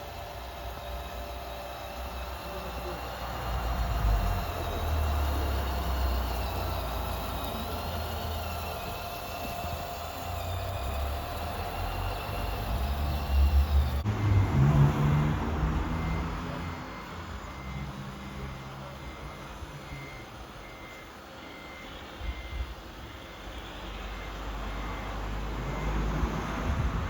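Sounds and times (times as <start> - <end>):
low motor hum: 0.0 - 21.6
reversing beeper: 0.7 - 26.9.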